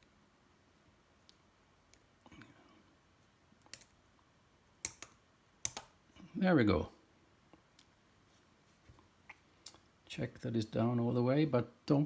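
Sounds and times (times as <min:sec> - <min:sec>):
small clicks and taps: 0:03.6 - 0:04.0, 0:04.8 - 0:05.9.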